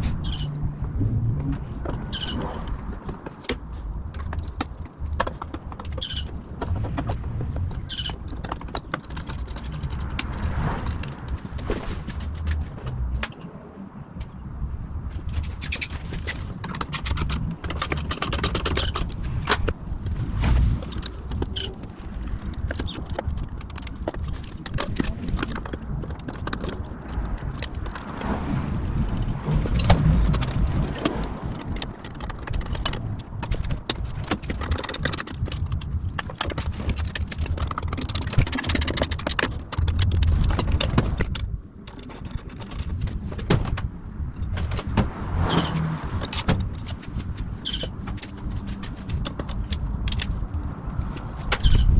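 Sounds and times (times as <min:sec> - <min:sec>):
metal tools clicking and clanking: 0:03.2 - 0:11.4, 0:15.3 - 0:19.8, 0:20.9 - 0:28.2, 0:28.9 - 0:43.6, 0:46.0 - 0:50.5.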